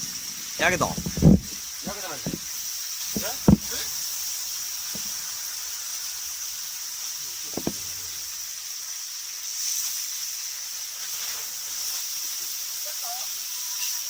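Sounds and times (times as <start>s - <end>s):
meat sizzling in a frying pan: 0.0s - 14.0s
sharp knocks: 0.6s - 2.4s, 3.2s - 3.9s, 7.5s - 7.9s.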